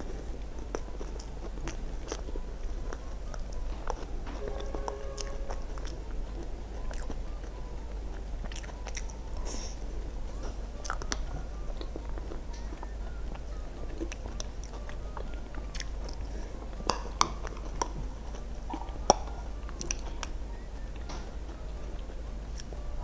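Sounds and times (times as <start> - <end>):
wet chewing: 0.6 - 7.2, 8.4 - 9.2, 10.8 - 12.8, 13.9 - 16.3, 16.9 - 20.4
mouth clicks: 8.1 - 9.8, 10.8 - 22.8.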